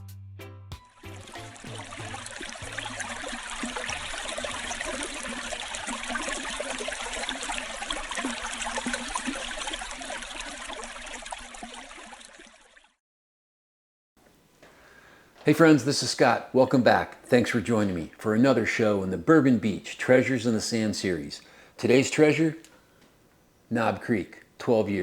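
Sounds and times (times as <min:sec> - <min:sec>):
rushing water: 0:01.0 - 0:12.9.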